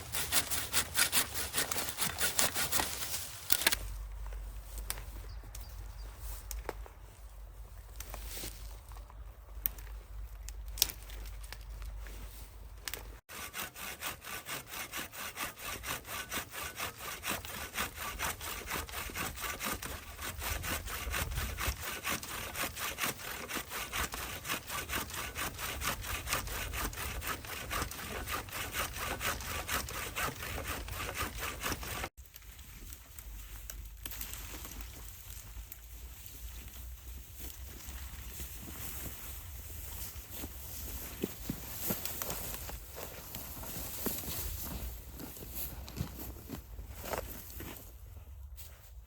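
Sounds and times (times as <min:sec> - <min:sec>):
hand saw cutting wood: 0:00.0 - 0:03.8, 0:13.2 - 0:32.2.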